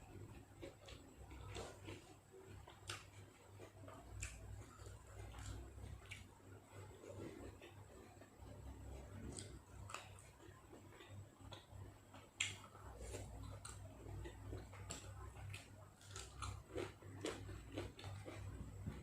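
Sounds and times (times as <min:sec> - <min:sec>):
person chewing food: 0:00.0 - 0:19.0.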